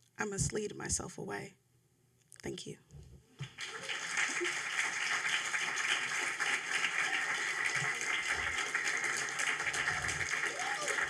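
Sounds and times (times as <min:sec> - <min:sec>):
audience applauding: 0:03.4 - 0:11.0.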